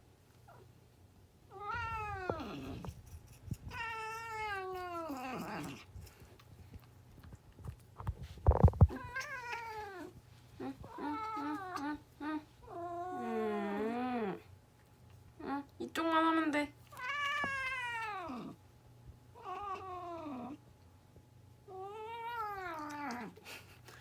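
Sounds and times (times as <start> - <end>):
cat yowling: 1.5 - 2.9, 3.7 - 5.8, 17.0 - 18.6, 21.8 - 23.3.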